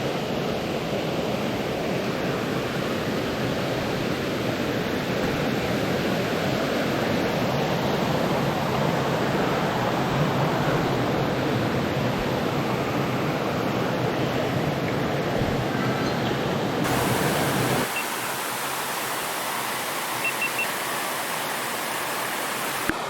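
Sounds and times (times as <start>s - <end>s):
waterfall and creek rushing: 16.7s - 23.0s.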